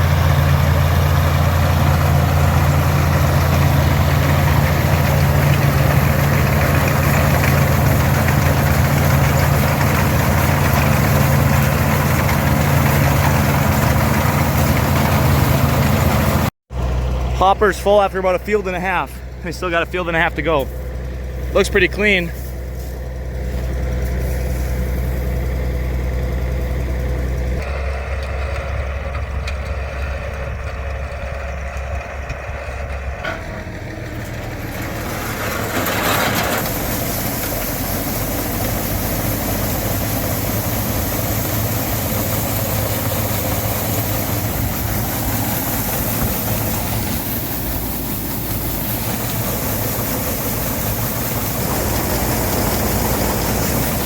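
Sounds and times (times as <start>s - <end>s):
rushing machine noise: 0.0s - 16.5s, 34.4s - 54.0s
tractor and combine running: 0.0s - 54.0s.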